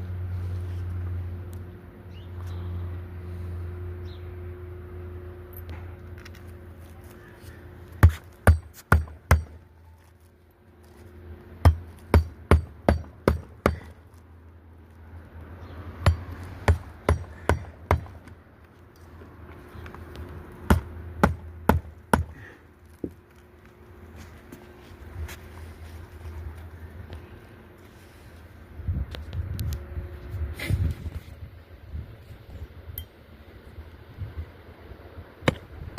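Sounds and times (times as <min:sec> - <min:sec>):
hammer driving nails into shingles: 0:11.6 - 0:13.9, 0:16.1 - 0:18.2.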